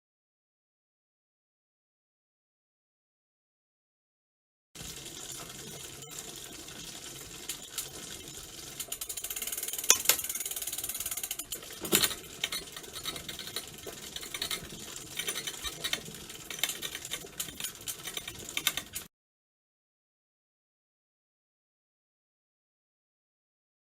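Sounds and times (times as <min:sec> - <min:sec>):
bicycle chain ticking rattle: 0:05.0 - 0:19.1.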